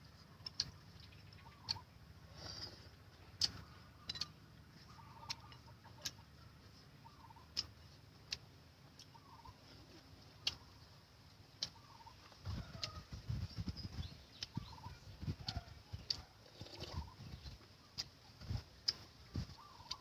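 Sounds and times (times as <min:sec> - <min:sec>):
faint short bird calls: 0:01.0 - 0:02.9, 0:11.6 - 0:13.6, 0:19.4 - 0:20.0
sharp clicks: 0:03.3 - 0:04.4, 0:11.6 - 0:11.8.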